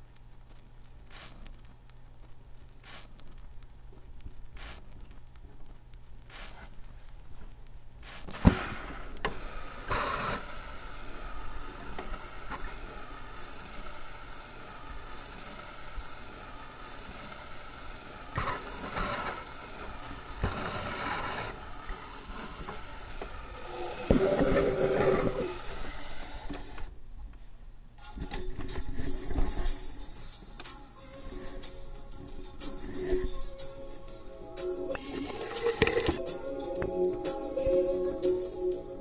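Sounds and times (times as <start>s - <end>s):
vinyl surface crackling: 0.0s - 27.0s, 28.0s - 34.0s, 34.6s - 39.0s
scratchy rushes: 13.5s - 26.9s.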